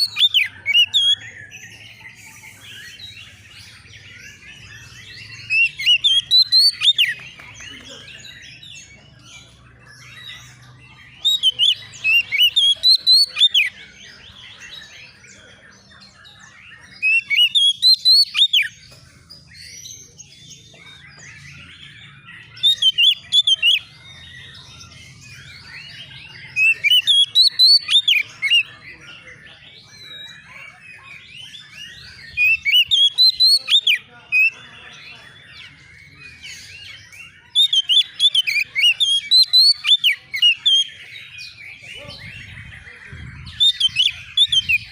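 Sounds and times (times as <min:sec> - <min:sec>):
bird singing whistled notes: 0:00.0 - 0:07.4, 0:10.0 - 0:15.4, 0:16.0 - 0:28.7, 0:29.9 - 0:34.6, 0:35.6 - 0:44.9
warbling chatter: 0:00.0 - 0:44.9.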